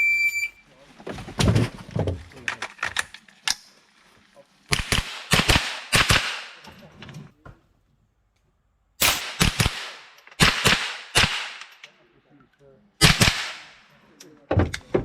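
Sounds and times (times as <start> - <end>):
rapid gunshots with echo: 4.7 - 6.6, 9.0 - 11.7, 13.0 - 13.8.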